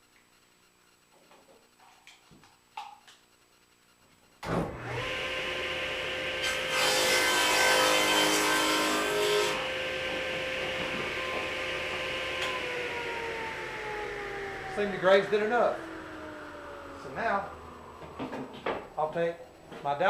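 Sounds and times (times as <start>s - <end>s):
table saw running: 4.7s - 19.1s.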